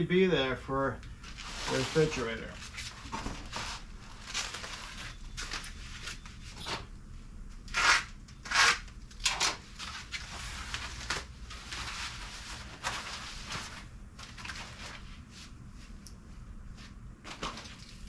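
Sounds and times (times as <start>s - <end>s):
packing material rustling: 1.2s - 6.7s, 9.7s - 15.2s.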